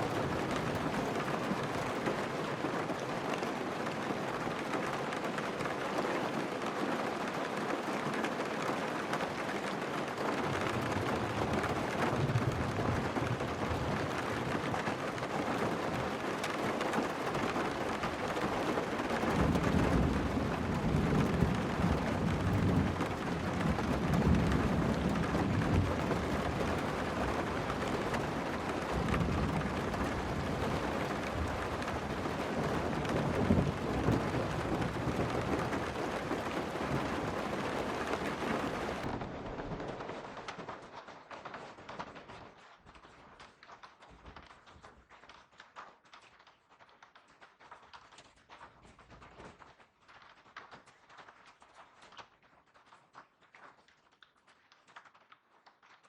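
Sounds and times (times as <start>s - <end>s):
heavy rain on a car: 0.0s - 42.3s
thunder rumbling: 18.2s - 40.4s.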